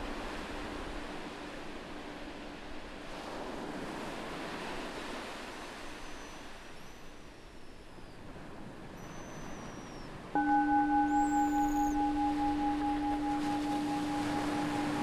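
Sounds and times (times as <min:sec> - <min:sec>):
ocean surf on a beach: 0:00.0 - 0:09.0, 0:10.1 - 0:15.0
meditation bell hum: 0:10.4 - 0:15.0
thin high whistles: 0:10.4 - 0:15.0.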